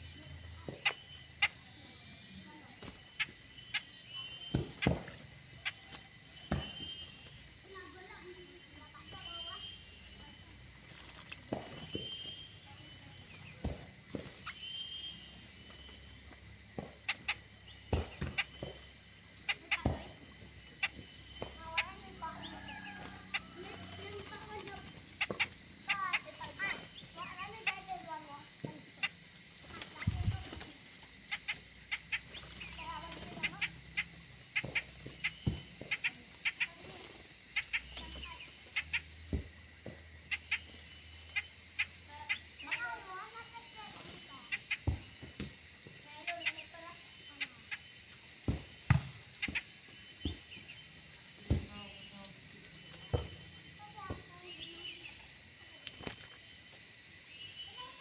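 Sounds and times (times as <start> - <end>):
birds whistling calls: 0.0 - 58.0.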